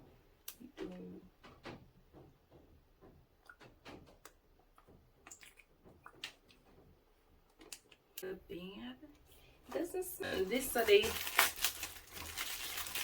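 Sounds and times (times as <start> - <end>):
small items and packaging handled: 9.7 - 13.0.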